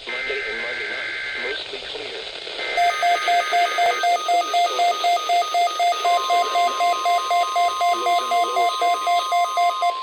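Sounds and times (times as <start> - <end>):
steady alarm tone: 2.8 - 10.0
weather radio beeping: 2.8 - 10.0.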